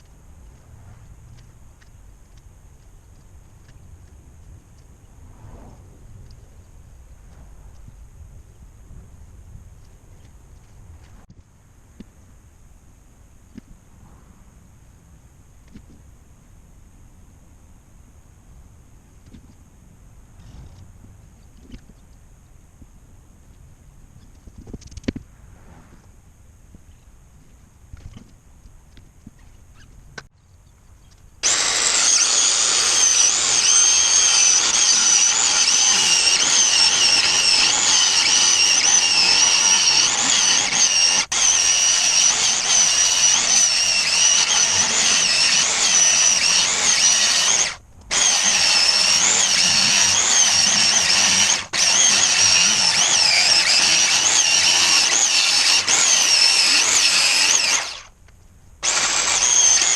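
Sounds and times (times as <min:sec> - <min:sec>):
power tool whining: 0:31.4 - 0:58.2, 0:58.8 - 0:59.9.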